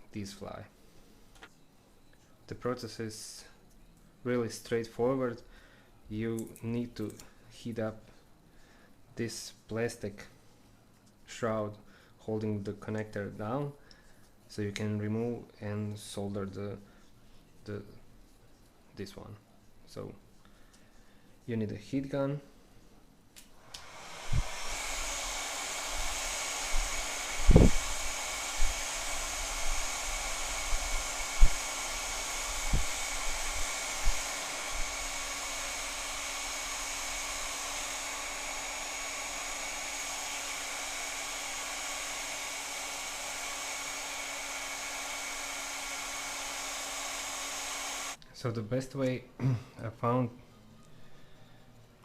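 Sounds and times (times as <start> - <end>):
heat gun blowing: 23.4 - 48.2.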